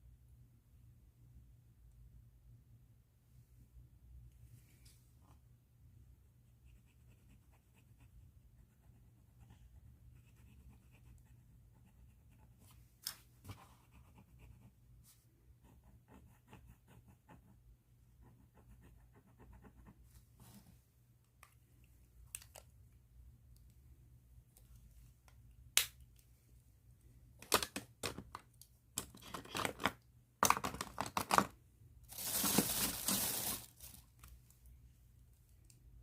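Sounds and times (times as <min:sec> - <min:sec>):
low steady hum: 0:00.0 - 0:36.0
pen scratching on paper: 0:06.7 - 0:12.6, 0:13.5 - 0:14.8, 0:15.6 - 0:17.6, 0:18.2 - 0:20.0.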